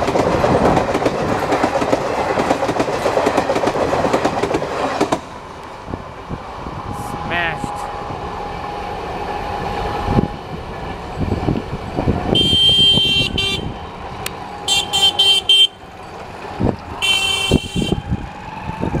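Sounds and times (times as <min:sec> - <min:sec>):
train clatter on rails: 0:00.0 - 0:19.0
locomotive horn blasts: 0:12.4 - 0:13.8, 0:14.6 - 0:15.8, 0:17.0 - 0:18.0.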